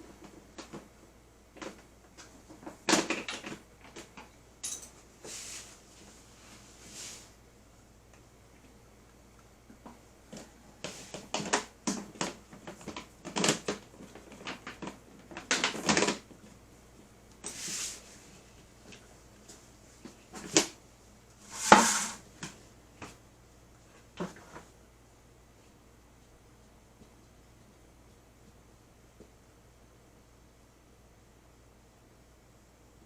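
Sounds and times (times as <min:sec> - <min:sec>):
handling noises rustling and scraping: 0:03.4 - 0:07.4, 0:17.4 - 0:20.7, 0:21.4 - 0:23.1.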